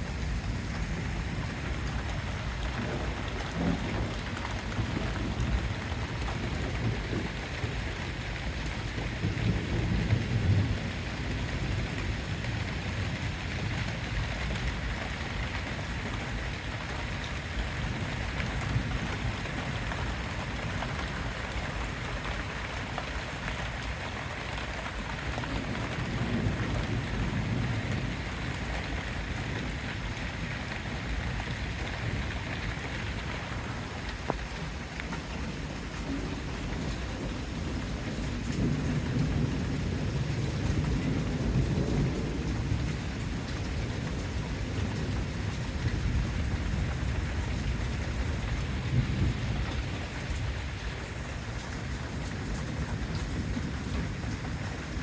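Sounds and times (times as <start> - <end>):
thunder rumbling: 0.0 - 7.8, 25.3 - 55.0
rain hissing: 17.7 - 55.0.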